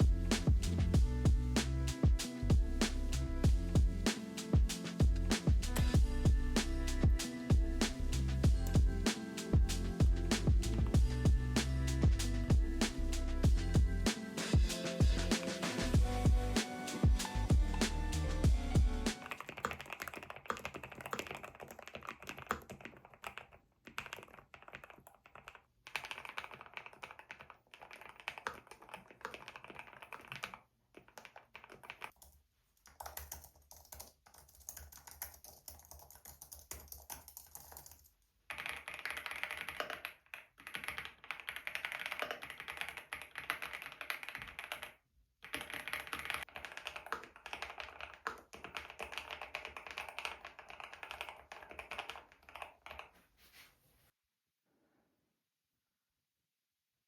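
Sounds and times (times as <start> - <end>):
mechanical keyboard typing: 19.1 - 53.1.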